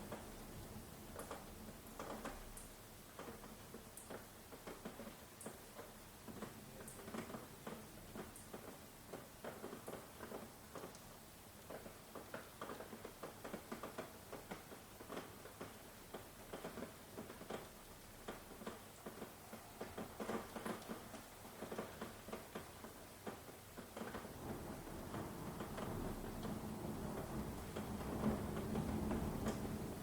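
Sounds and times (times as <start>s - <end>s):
raindrops pattering and dripping: 0.0s - 30.0s
steady rain hiss: 0.0s - 30.0s
low thunder rumble: 24.3s - 30.0s.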